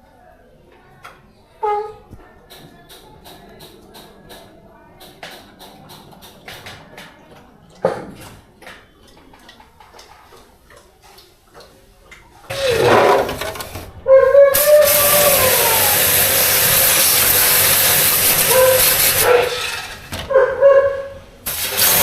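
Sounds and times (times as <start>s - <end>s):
jet pump spraying water: 12.5s - 13.8s, 14.5s - 20.1s, 21.4s - 22.0s.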